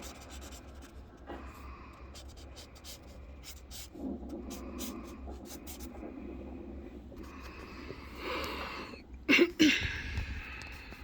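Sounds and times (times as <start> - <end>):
marker scratching on paper: 0.0 - 6.1
steady low hum: 0.0 - 11.0.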